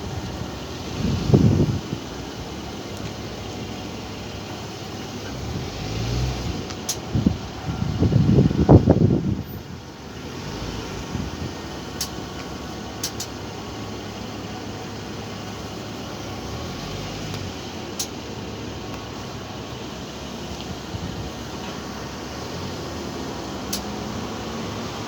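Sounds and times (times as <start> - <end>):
car wheel rumble and hum: 0.0 - 25.0
faint clicks: 12.0 - 13.4.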